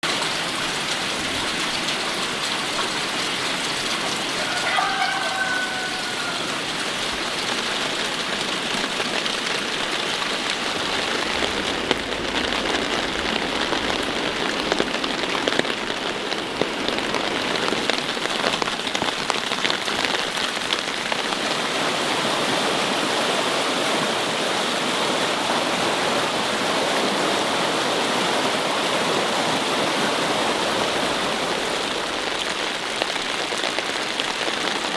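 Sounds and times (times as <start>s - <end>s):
oil popping: 8.7s - 21.3s.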